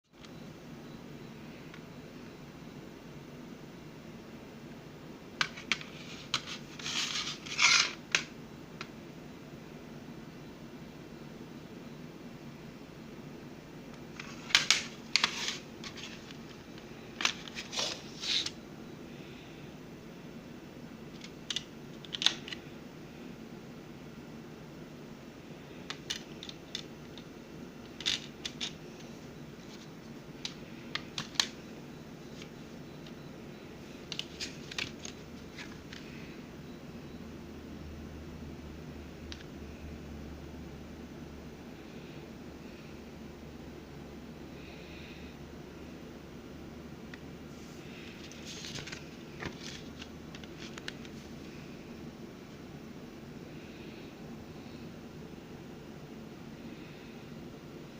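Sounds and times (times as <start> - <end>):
plastic case rustling scrape: 5.4 - 8.0, 14.2 - 16.6, 17.2 - 18.6, 48.1 - 51.2.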